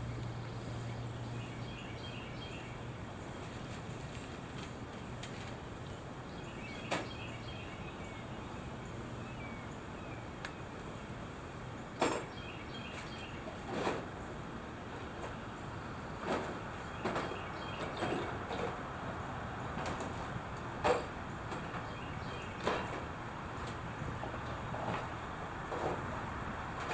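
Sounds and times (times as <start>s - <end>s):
knocks from handling tools and timber: 16.2s - 18.8s, 19.7s - 22.0s, 22.6s - 26.2s.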